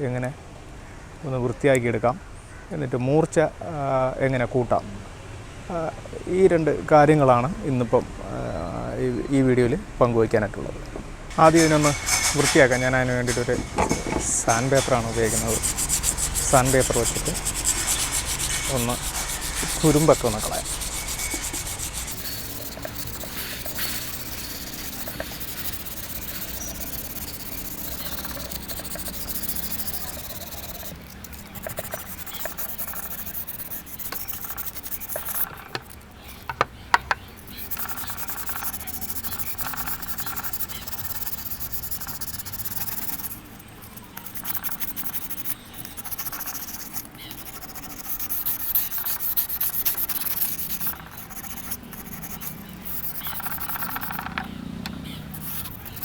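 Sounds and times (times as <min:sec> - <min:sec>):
sandpaper rubbing on steel: 0:14.5 - 0:36.6, 0:37.3 - 0:56.0.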